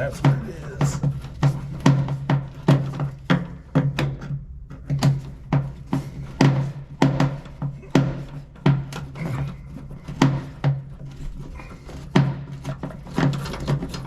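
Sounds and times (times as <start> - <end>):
steady drum beat: 0.0 - 4.0, 5.2 - 9.4.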